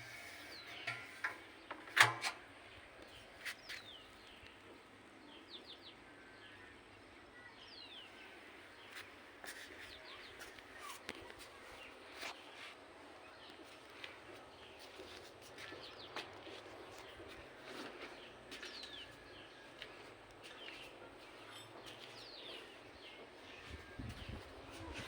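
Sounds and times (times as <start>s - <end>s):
birds chirping: 0.0s - 6.7s, 13.2s - 25.0s.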